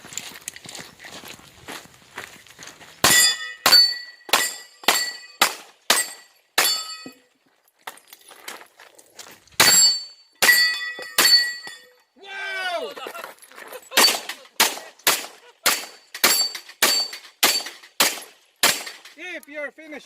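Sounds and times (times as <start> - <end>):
pistol shots: 3.0 - 6.8, 14.0 - 19.0
steel target ringing: 3.0 - 7.3, 9.6 - 12.0, 15.7 - 19.0.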